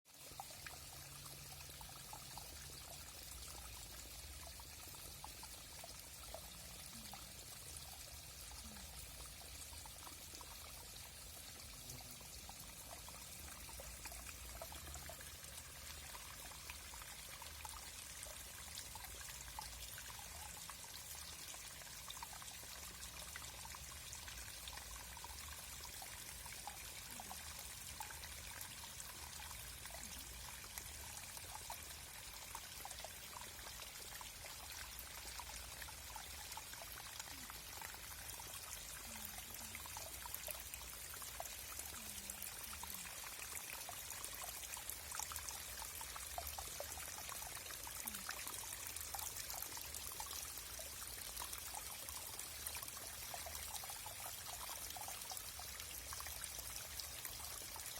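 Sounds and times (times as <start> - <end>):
stream trickling and babbling: 0.0 - 57.9.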